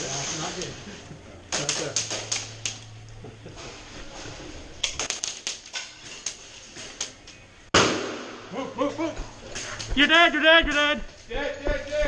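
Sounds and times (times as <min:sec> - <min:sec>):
airsoft guns firing: 0:07.7 - 0:08.5.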